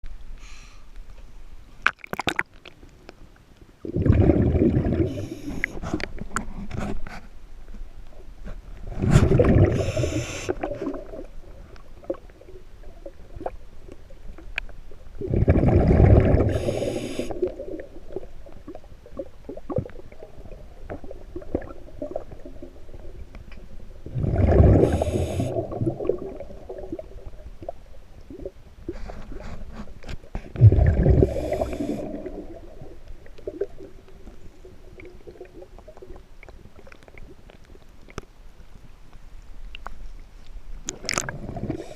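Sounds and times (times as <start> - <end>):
quiet underwater gurgling: 0.0 - 41.9
diver exhaling bubbles: 3.8 - 5.8, 8.9 - 11.3, 15.2 - 18.2, 24.0 - 27.0, 30.5 - 32.9.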